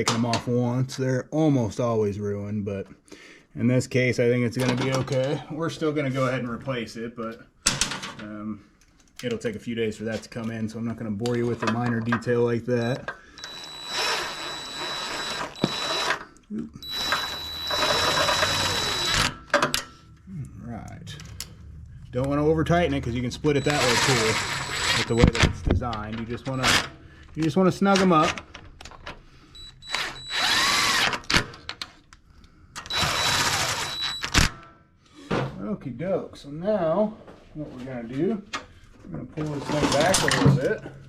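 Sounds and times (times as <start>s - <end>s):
cordless power driver whining: 13.4s - 16.2s, 16.8s - 19.4s, 23.4s - 25.6s, 29.6s - 31.4s, 32.8s - 34.5s.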